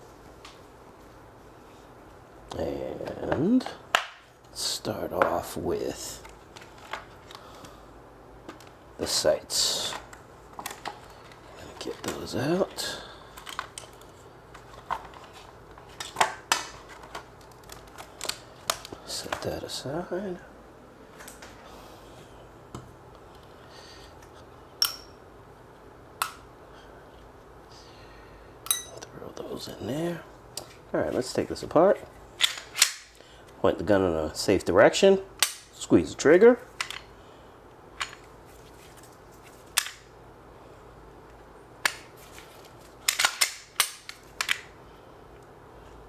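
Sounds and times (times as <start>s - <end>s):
faint handling sounds: 4.4s - 20.4s, 28.8s - 32.8s, 36.6s - 39.9s, 42.0s - 43.3s.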